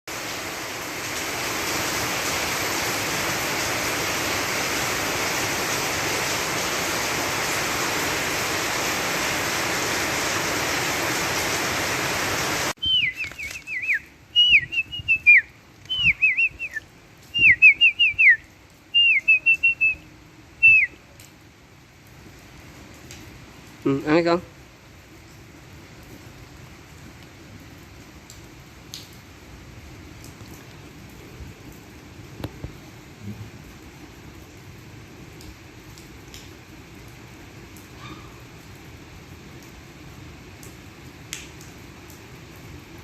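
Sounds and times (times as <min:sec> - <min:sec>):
heavy rain pouring: 0:00.1 - 0:43.0
high whistled chirps: 0:12.8 - 0:21.0.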